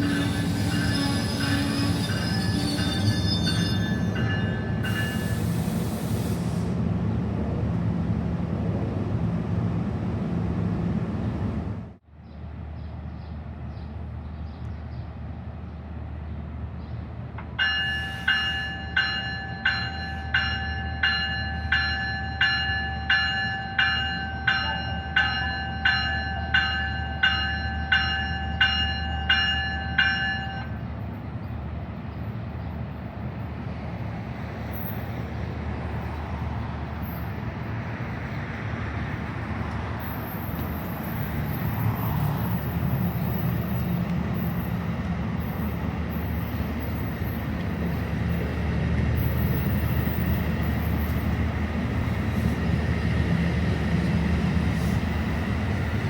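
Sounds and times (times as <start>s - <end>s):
train rumble: 0.0s - 56.0s
bell ringing: 0.5s - 5.2s
train hiss: 4.5s - 7.0s, 54.0s - 56.0s.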